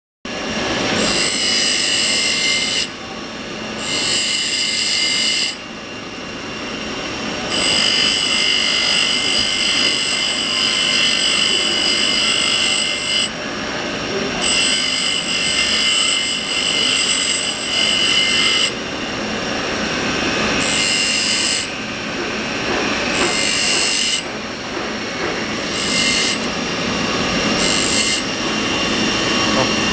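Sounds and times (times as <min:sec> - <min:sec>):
drill bit grinding on wheel: 0:01.0 - 0:03.0, 0:03.8 - 0:05.6, 0:07.5 - 0:13.4, 0:14.4 - 0:18.8, 0:20.6 - 0:21.8, 0:23.1 - 0:24.3, 0:25.5 - 0:28.7
grinding wheel running: 0:20.6 - 0:29.9.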